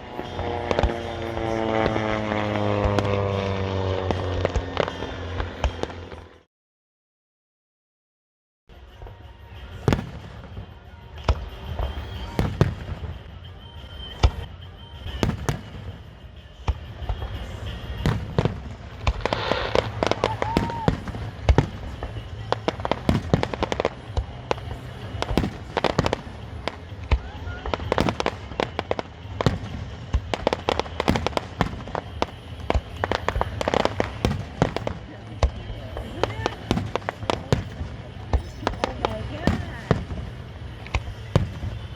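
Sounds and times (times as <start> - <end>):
fireworks bangs: 0.0 - 6.4, 8.9 - 41.9
distant explosions rumbling: 0.2 - 6.4, 15.1 - 41.9.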